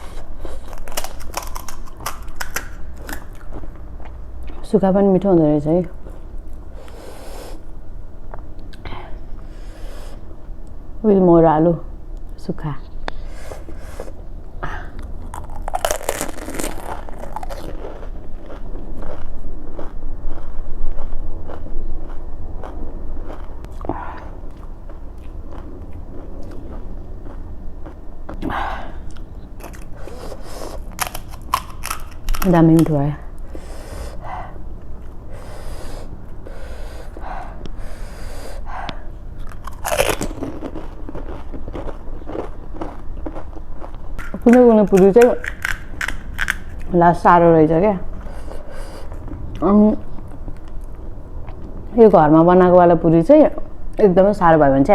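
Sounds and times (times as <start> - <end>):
crisp snack crunching while chewed: 0.0 - 3.8, 15.0 - 28.4, 29.1 - 33.0, 39.4 - 47.0.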